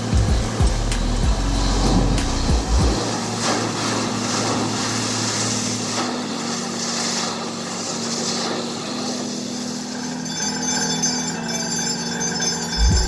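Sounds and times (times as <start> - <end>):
hissing noise: 0.0 - 11.4
drilling rig engine running: 0.0 - 13.0.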